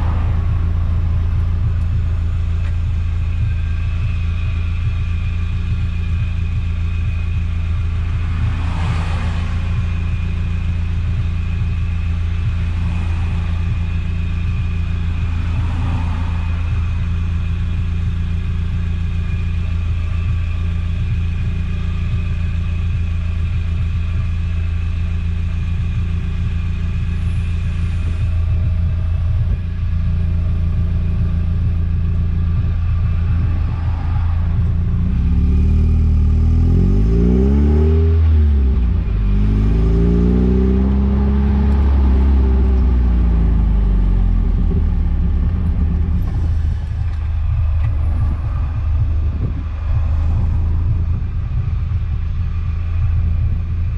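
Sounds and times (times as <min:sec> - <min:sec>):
car engine revving: 0:00.0 - 0:53.9.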